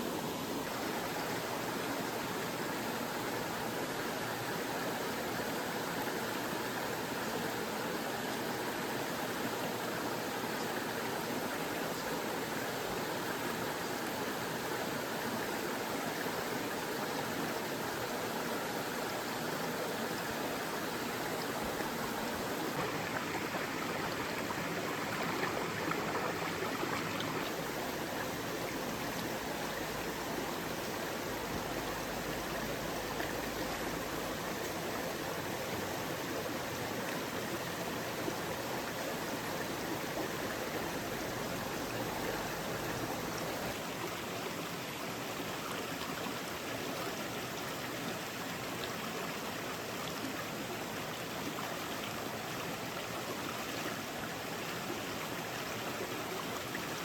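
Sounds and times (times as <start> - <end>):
mountain stream running: 0.0 - 57.0.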